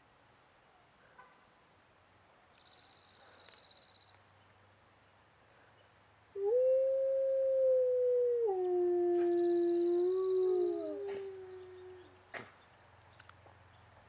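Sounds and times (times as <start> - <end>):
wolf howling: 6.4 - 12.2.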